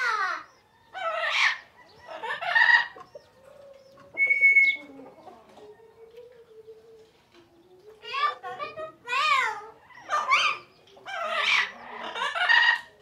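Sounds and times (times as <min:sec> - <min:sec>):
parrot squawking: 0:08.6 - 0:12.9.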